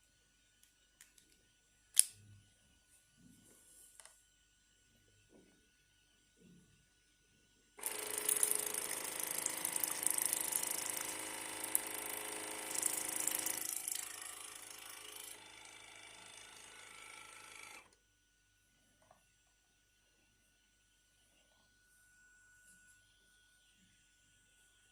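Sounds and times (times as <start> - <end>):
water flosser pump buzzing: 7.8 - 17.9.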